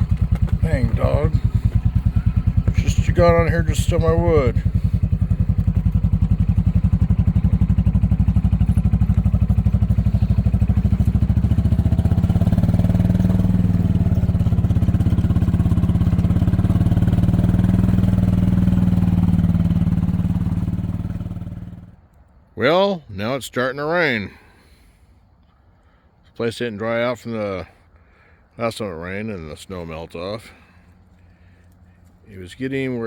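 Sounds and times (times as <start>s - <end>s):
golf cart engine putter: 0.0s - 7.8s.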